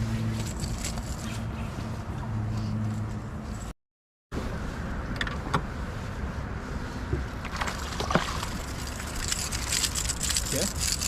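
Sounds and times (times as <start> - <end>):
gear knocking and creaking: 0.2 - 1.4, 8.0 - 11.0.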